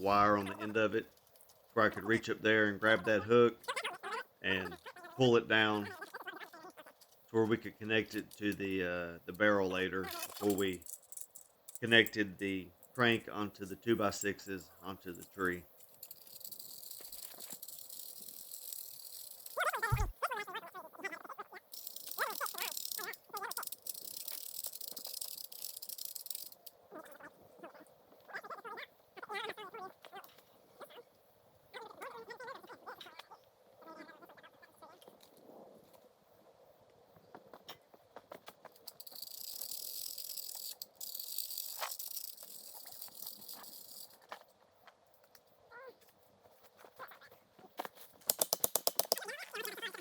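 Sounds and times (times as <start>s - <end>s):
high insect buzz: 16.2s - 20.2s.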